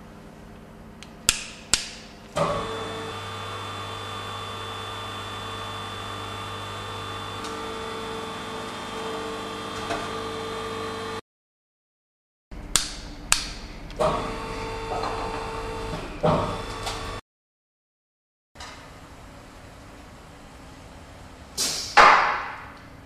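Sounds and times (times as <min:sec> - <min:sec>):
hydraulic pump humming: 0:02.3 - 0:11.2, 0:13.9 - 0:17.2.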